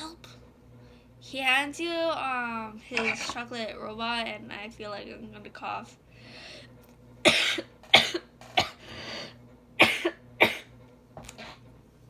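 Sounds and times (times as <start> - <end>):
person breathing: 6.1 - 6.8, 8.8 - 9.4
person coughing: 7.3 - 8.9, 9.8 - 10.7.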